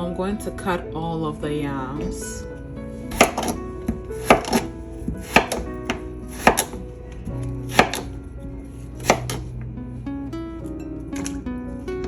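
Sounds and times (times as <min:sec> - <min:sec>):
soft background music: 0:00.0 - 0:12.0
knife chopping on cutting board: 0:03.1 - 0:06.8, 0:07.7 - 0:08.2, 0:09.0 - 0:09.5.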